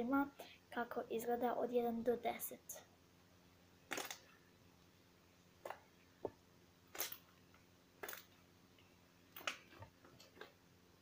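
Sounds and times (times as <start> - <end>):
crackling slime squishes: 6.9 - 7.2, 8.0 - 8.4.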